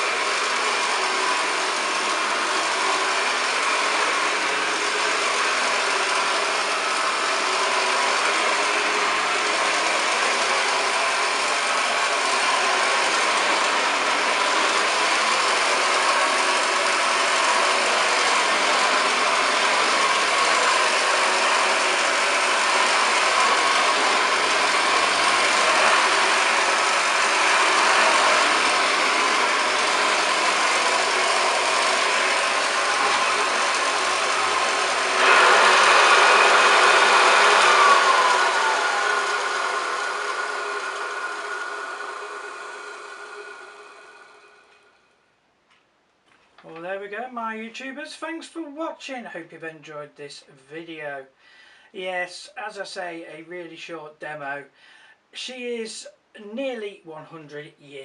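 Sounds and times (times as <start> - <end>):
upright vacuum cleaner running: 0.0 - 45.0.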